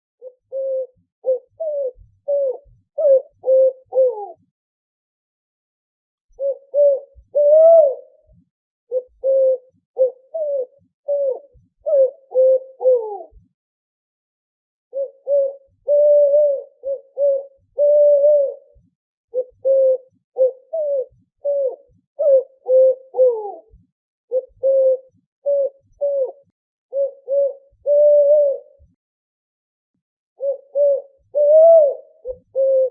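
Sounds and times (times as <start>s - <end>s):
owl hooting: 0.2s - 4.4s, 6.4s - 8.2s, 8.9s - 13.4s, 15.0s - 18.8s, 19.4s - 28.8s, 30.4s - 32.9s.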